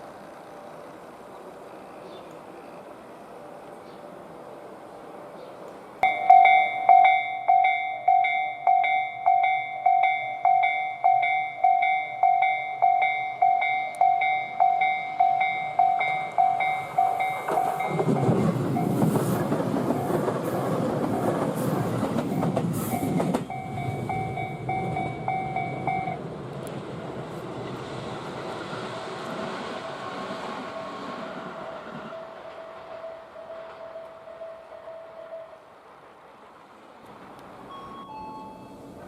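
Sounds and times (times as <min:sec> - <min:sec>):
train passing: 0:00.0 - 0:39.0
level crossing warning bell ringing: 0:06.0 - 0:19.2, 0:22.3 - 0:26.2, 0:29.8 - 0:35.6, 0:37.7 - 0:39.0.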